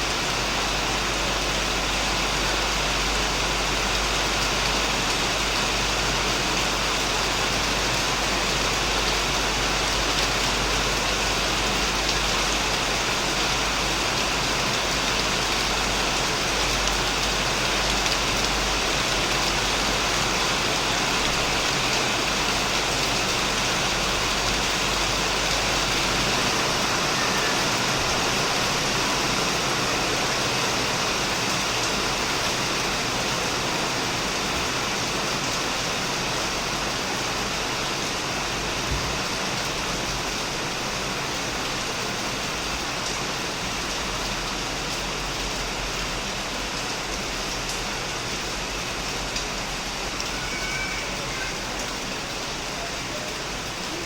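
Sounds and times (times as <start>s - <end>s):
heavy rain on shed roof: 0.0s - 54.0s.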